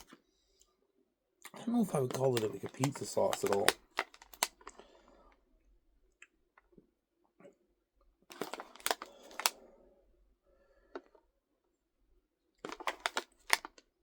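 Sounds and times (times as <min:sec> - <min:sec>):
crackers being chewed: 0:01.4 - 0:05.1, 0:08.3 - 0:09.6, 0:12.6 - 0:13.9.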